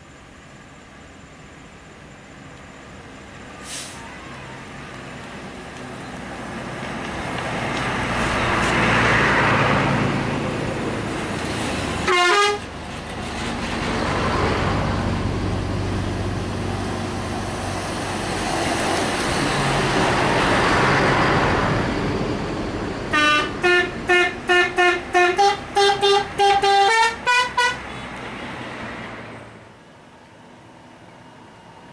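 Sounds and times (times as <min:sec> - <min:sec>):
buses driving past: 0:00.0 - 0:31.9
bus horn blast: 0:12.0 - 0:12.7, 0:23.1 - 0:28.2
musical horn toots: 0:12.0 - 0:12.7, 0:23.1 - 0:28.0.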